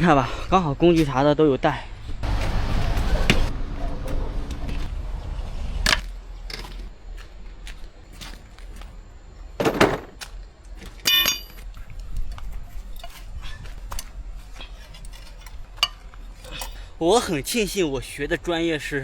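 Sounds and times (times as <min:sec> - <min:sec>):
metal hand tools clinking: 0:11.0 - 0:11.6
ringing metallic clang: 0:11.0 - 0:11.6.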